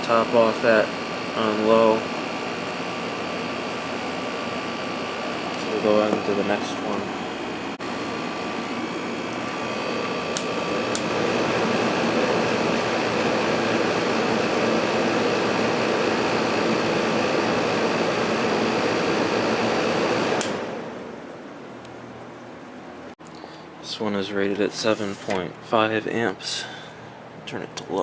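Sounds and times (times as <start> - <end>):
window air conditioner running: 0.0 - 28.0
air conditioner switch clicks: 10.3 - 11.1, 20.4 - 20.7.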